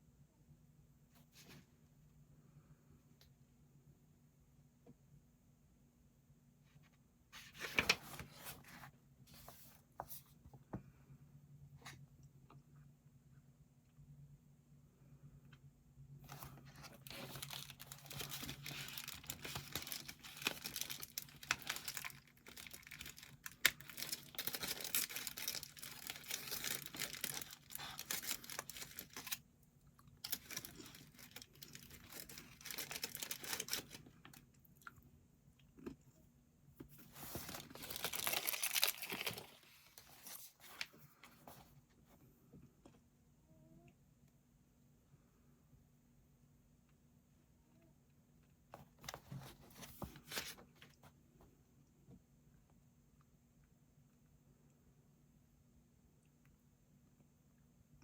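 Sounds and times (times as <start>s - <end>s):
crinkling and rustling: 6.7s - 10.7s, 16.2s - 29.4s, 30.0s - 34.6s, 36.8s - 42.3s, 48.7s - 51.2s.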